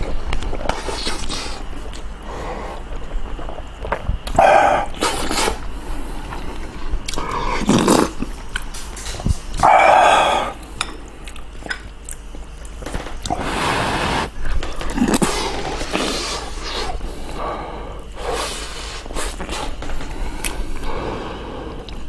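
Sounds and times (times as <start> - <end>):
quiet chewing: 0.0 - 13.6, 14.4 - 22.0
loud wet mouth noises: 7.0 - 8.7.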